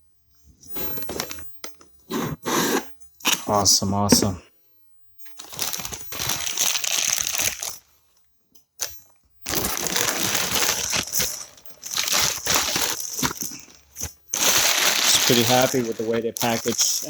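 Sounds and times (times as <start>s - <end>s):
packing material crinkling: 5.3s - 7.9s, 9.5s - 17.0s.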